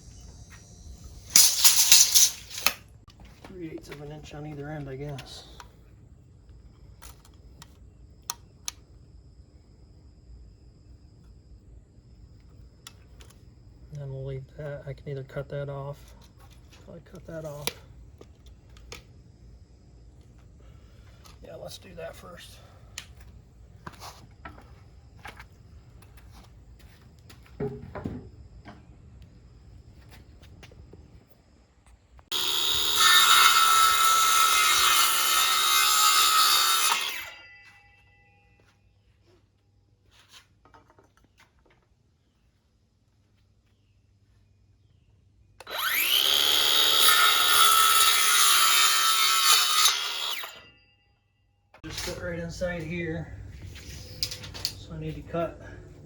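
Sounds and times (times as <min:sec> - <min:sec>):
power saw cutting wood: 0:00.0 - 0:02.8, 0:32.3 - 0:37.6, 0:45.6 - 0:50.8
knocks and clicks of handling wood: 0:27.3 - 0:28.9, 0:40.3 - 0:41.9.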